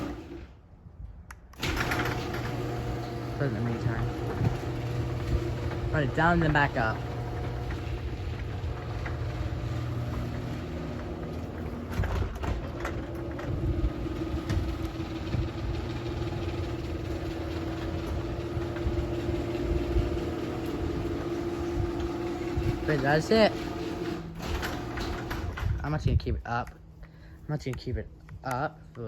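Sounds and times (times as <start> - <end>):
garage door opener motor: 0.0 - 0.6, 1.6 - 25.8
clicks and clunks: 4.0 - 16.6.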